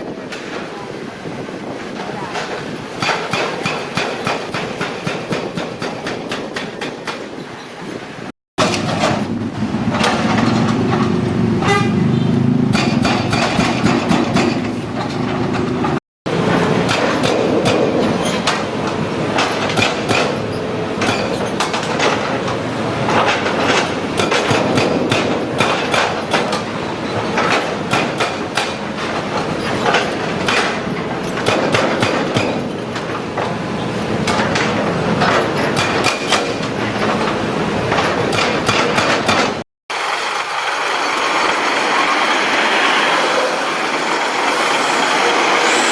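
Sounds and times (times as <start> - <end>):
machinery running: 8.6 - 45.9
hydraulic breaker hammering concrete: 12.7 - 14.8, 23.1 - 26.7, 29.6 - 32.7.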